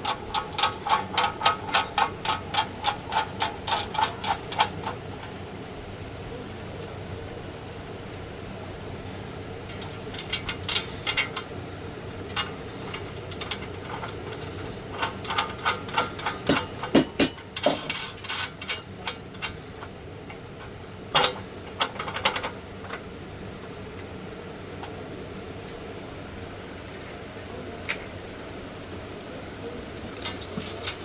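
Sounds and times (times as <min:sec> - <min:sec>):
tools and parts knocking and clanking: 0:00.0 - 0:05.4, 0:09.7 - 0:23.1
steady low hum: 0:00.0 - 0:31.0.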